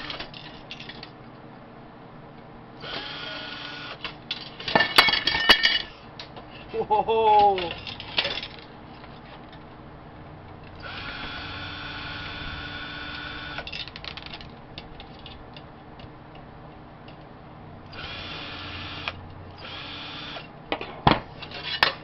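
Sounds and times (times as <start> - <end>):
small electric motor whining: 2.8 - 4.0, 10.8 - 13.6, 17.9 - 20.4.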